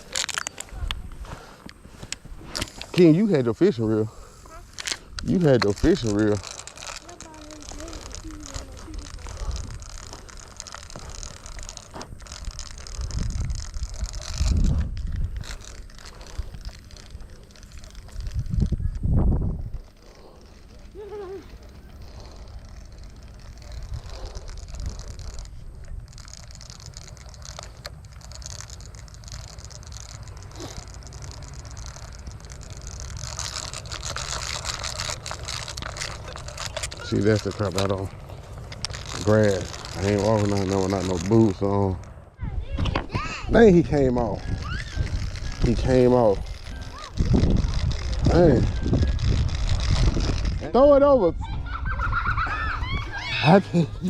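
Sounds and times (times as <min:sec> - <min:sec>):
rustling: 0:00.0 - 0:50.7
wind buffeting microphone: 0:00.0 - 0:54.0
small mechanical clicks: 0:04.6 - 0:19.1, 0:19.7 - 0:41.7.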